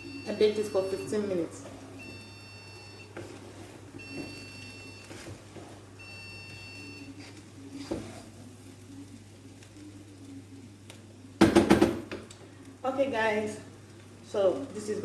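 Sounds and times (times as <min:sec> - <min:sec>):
oven timer long beeps: 0:00.0 - 0:03.2, 0:04.0 - 0:05.3, 0:06.0 - 0:07.2.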